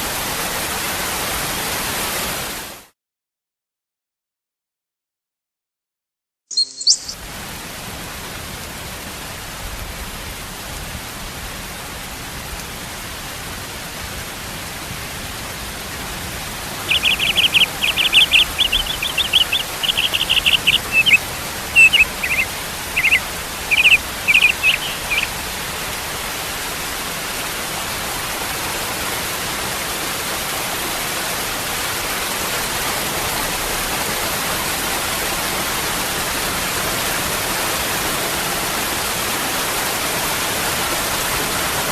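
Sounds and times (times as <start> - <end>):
bird singing high notes: 6.5 - 7.2, 16.9 - 25.3
waterfall rushing: 14.4 - 41.6.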